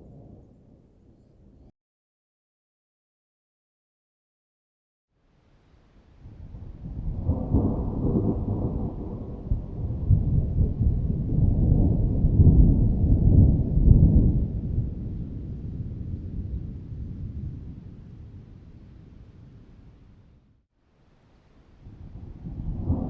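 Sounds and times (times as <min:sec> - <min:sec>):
thunder rumbling: 0:06.2 - 0:20.4, 0:21.7 - 0:23.0.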